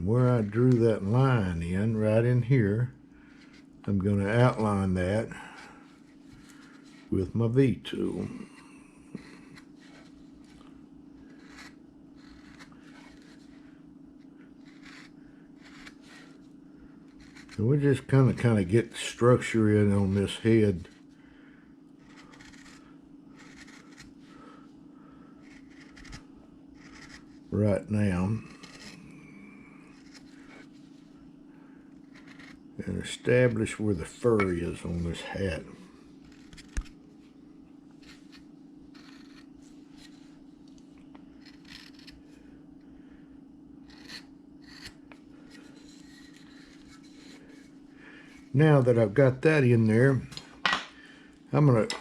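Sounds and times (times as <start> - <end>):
steady low hum: 0.0 - 52.0
carving tool scraping wood: 3.3 - 4.9, 6.3 - 7.1, 11.2 - 13.6, 14.6 - 16.4, 17.1 - 18.6, 22.0 - 24.1, 25.4 - 29.2, 29.9 - 30.7, 32.0 - 33.8, 36.2 - 36.9, 38.0 - 40.3, 41.4 - 42.2, 43.8 - 47.8.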